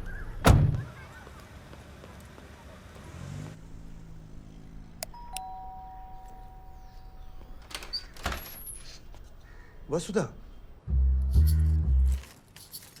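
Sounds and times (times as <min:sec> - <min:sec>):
two-tone doorbell chime: 0:05.1 - 0:07.2.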